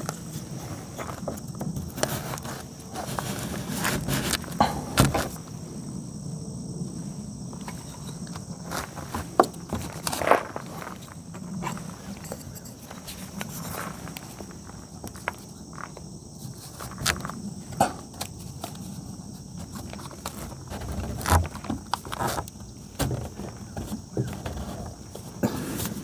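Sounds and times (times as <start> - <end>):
steady high hiss: 0.0 - 20.7.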